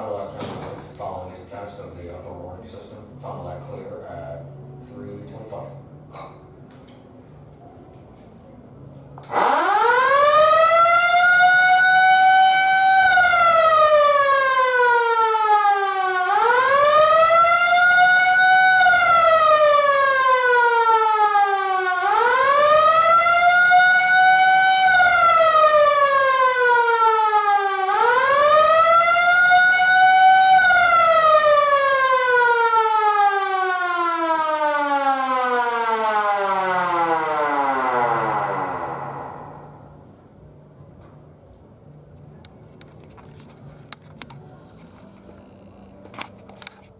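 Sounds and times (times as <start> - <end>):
wailing siren: 9.2 - 40.2.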